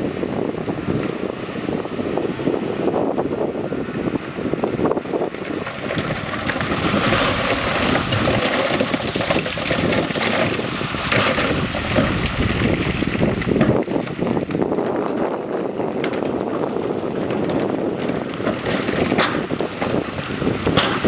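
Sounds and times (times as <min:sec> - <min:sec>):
diesel machinery engine under load: 0:00.0 - 0:21.0
rock clattering and scraping: 0:05.3 - 0:21.0.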